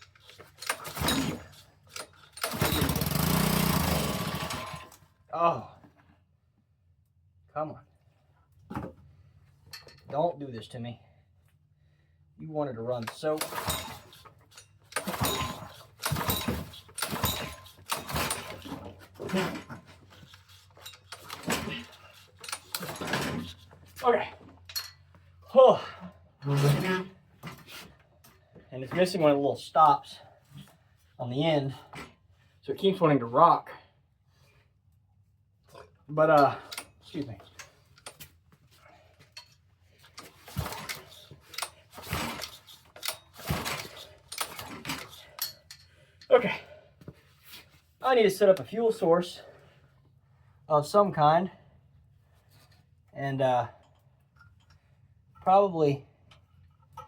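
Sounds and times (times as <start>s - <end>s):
metal parts clinking: 0.0s - 3.1s, 13.1s - 23.7s, 24.7s - 25.0s, 40.2s - 46.3s.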